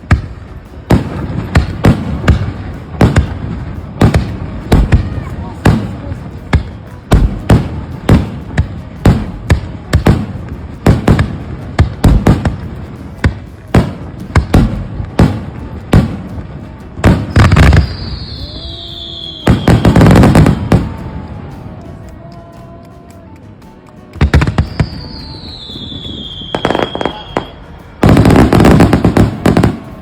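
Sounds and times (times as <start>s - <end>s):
firework bangs: 0.0s - 21.2s, 24.2s - 30.0s
firework crackling: 0.0s - 30.0s
falling firework whistle: 17.3s - 20.2s, 24.7s - 30.0s.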